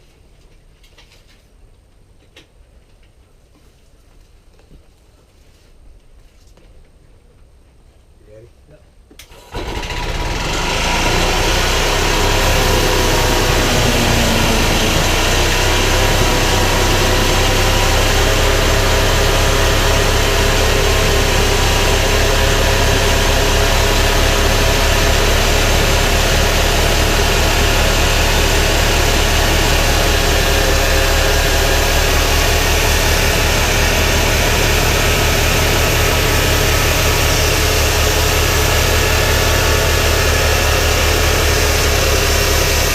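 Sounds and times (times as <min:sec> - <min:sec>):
gas engine starting and running: 0:09.2 - 0:42.9.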